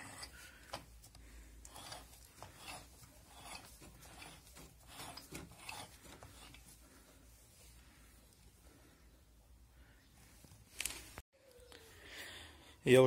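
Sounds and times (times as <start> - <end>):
hands rubbing and scraping: 0.0 - 7.8.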